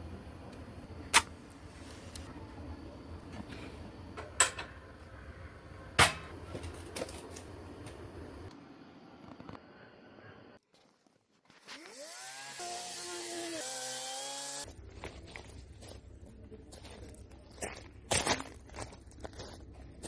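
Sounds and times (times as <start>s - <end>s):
low steady hum: 0.0s - 10.6s.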